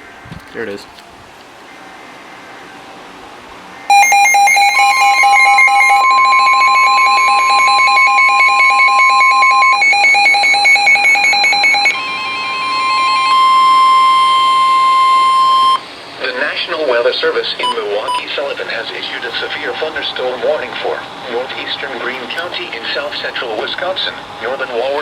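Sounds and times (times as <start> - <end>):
rapid pulsed beeping: 3.9 - 15.8, 17.6 - 25.0
steady alarm tone: 3.9 - 15.9, 17.6 - 25.0.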